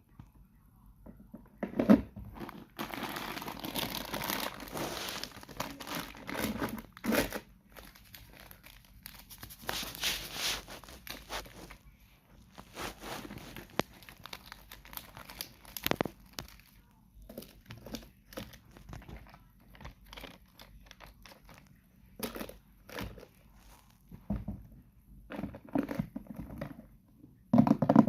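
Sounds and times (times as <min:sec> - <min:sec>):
plastic packaging crinkling: 0:02.3 - 0:11.8, 0:12.4 - 0:24.0.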